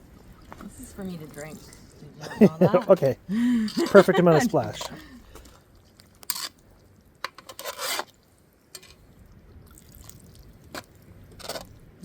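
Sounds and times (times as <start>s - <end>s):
cookware scraping: 2.2s - 5.4s, 6.2s - 6.6s, 7.3s - 8.1s, 8.8s - 9.0s, 10.8s - 11.7s.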